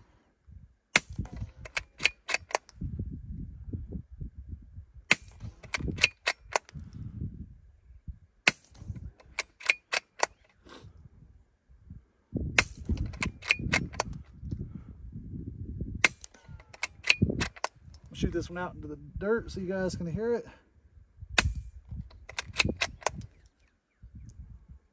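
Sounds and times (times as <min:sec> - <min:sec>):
suppressed rifle shots: 0:01.0 - 0:02.7, 0:16.0 - 0:17.8, 0:22.2 - 0:23.4.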